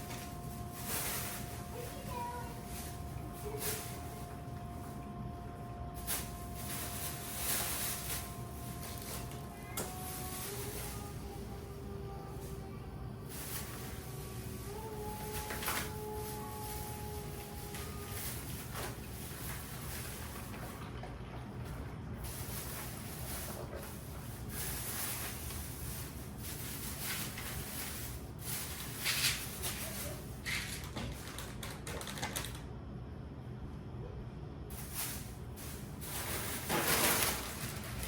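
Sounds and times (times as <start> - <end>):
steady low hum: 0.0 - 38.0
food packages rustling and clattering: 5.7 - 11.3, 22.2 - 32.6, 34.8 - 38.0.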